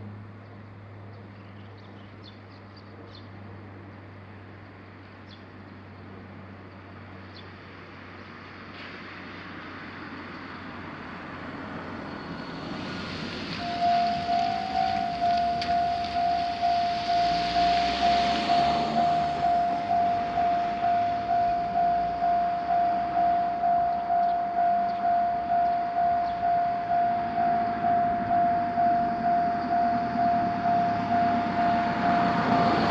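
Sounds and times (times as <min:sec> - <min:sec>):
road vehicle noise: 0:00.0 - 0:32.9
crossing warning bell dings: 0:13.6 - 0:32.9.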